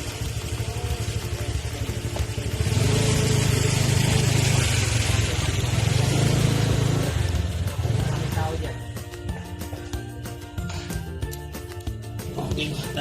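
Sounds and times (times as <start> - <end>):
car engine idling: 0.0 - 10.1.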